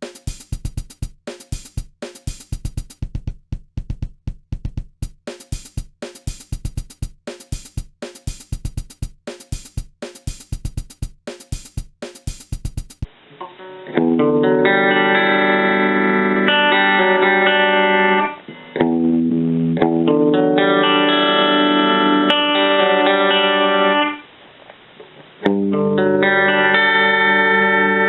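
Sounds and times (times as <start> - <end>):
electric guitar chords ringing: 13.6 - 24.2, 25.5 - 28.0.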